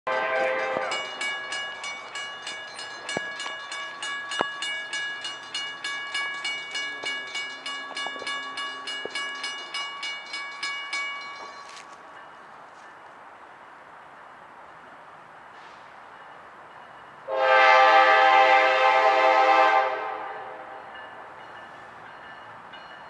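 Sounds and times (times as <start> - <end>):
locomotive horn blast: 0.1 - 1.0, 17.3 - 20.8
railroad crossing bell ringing: 0.1 - 14.9, 15.6 - 23.0.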